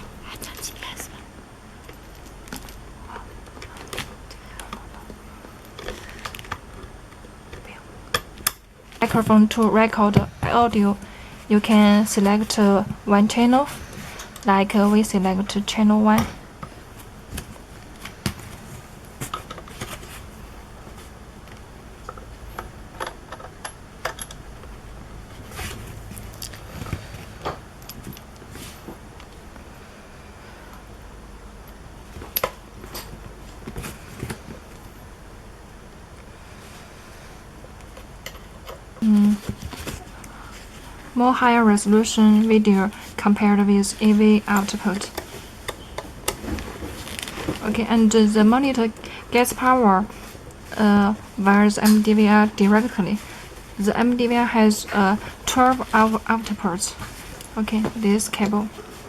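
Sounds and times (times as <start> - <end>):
low steady hum: 0.0 - 59.0
clicks and rattles of parts: 21.5 - 24.7.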